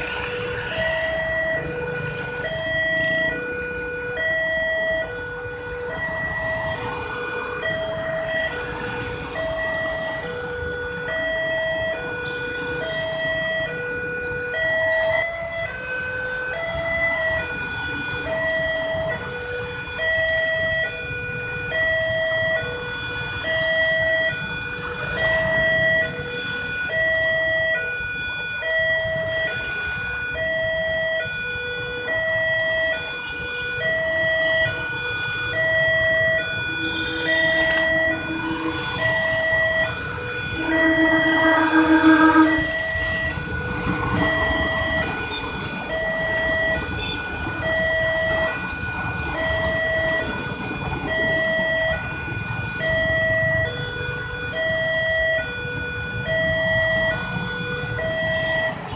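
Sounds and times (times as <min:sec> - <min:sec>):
level crossing warning siren: 0:00.0 - 0:58.9
low steady tone: 0:40.5 - 0:43.2.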